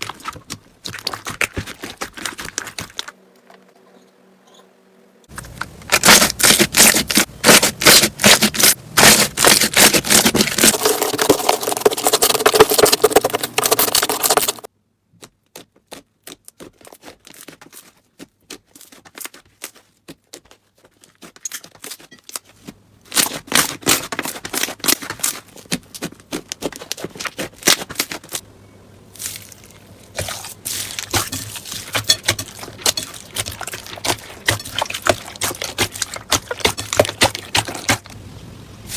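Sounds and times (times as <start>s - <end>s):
slime squished crackling: 5.3s - 14.7s.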